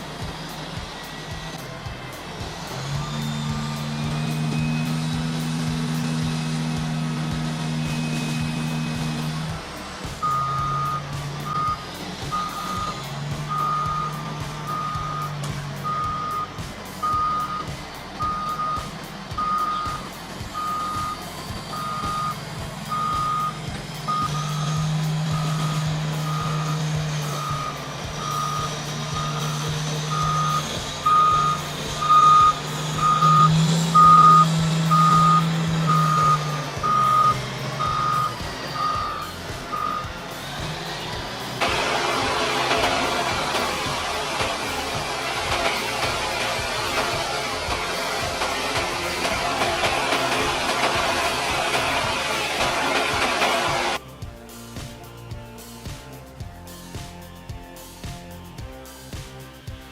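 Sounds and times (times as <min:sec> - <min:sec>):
heavy vehicle engine running: 0:00.0 - 0:59.9
reversing alarm beeping: 0:02.6 - 0:09.6, 0:10.2 - 0:40.2.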